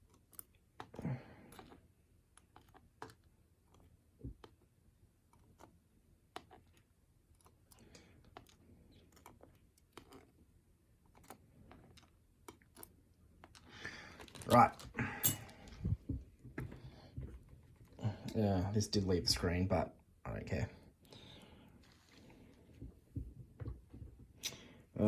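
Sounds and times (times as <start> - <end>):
small metal parts clicking: 15.2 - 15.5
soft rustling: 21.7 - 24.4.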